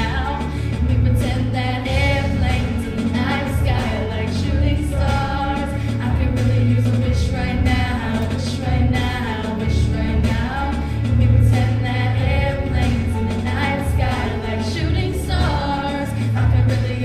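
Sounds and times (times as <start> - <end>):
bass line: 0.0 - 17.0
choir singing pop song: 0.0 - 17.0.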